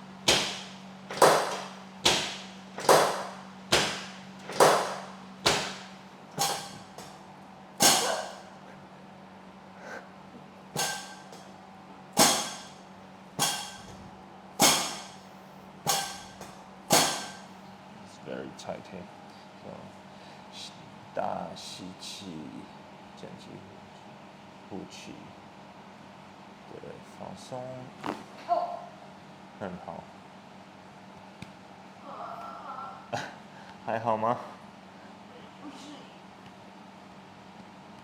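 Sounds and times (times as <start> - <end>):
steady low hum: 0.0 - 38.0
sharp ringing knocks: 0.3 - 7.2, 12.2 - 12.8, 13.4 - 14.0, 14.6 - 15.3, 15.9 - 17.5.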